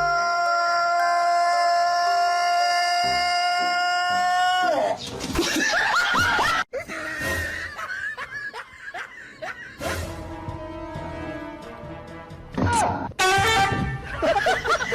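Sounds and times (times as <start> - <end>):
people laughing: 5.3 - 10.0, 13.7 - 14.9.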